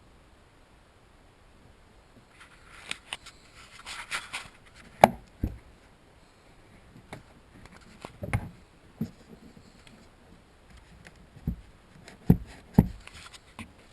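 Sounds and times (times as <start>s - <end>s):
plastic trim rubbing and scraping: 10.7s - 13.8s.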